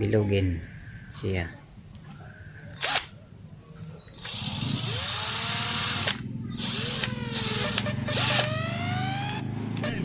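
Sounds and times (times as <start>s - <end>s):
electric drill running: 2.8s - 3.0s, 4.2s - 9.4s.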